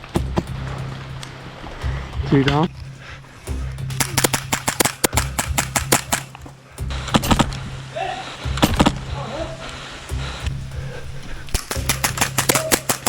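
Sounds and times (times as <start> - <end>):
airsoft guns firing: 3.9 - 6.4, 11.6 - 13.0.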